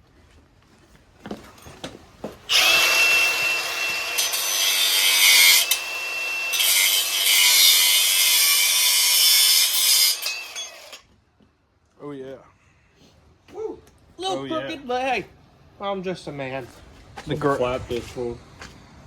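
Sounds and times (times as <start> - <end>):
angle grinder cutting metal: 2.5 - 11.1.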